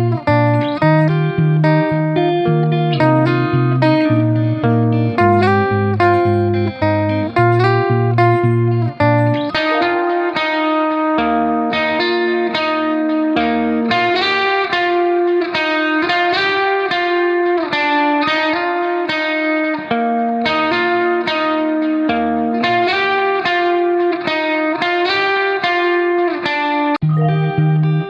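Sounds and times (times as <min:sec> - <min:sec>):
bass line: 0:00.0 - 0:10.1, 0:27.0 - 0:28.0
plucked guitar melody: 0:00.0 - 0:28.0.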